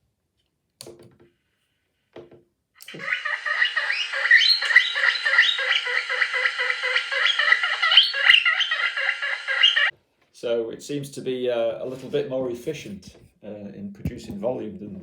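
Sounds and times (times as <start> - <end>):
guinea pig squeaks through speaker: 2.9 - 9.9.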